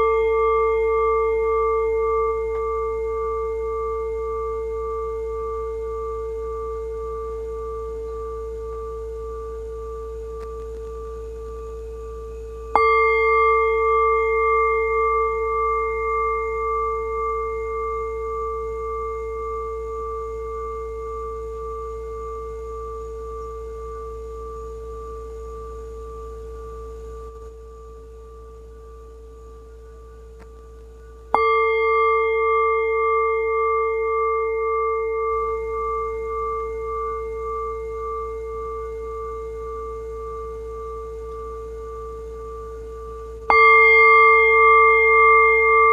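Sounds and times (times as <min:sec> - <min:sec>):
bell ringing: 0:43.5 - 0:45.9.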